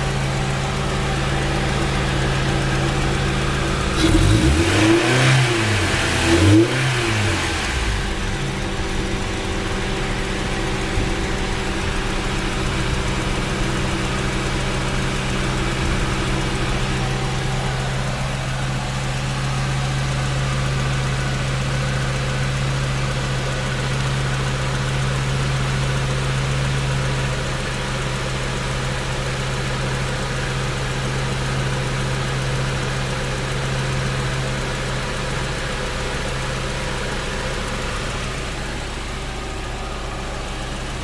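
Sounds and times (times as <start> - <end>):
car engine idling: 0.0 - 41.0.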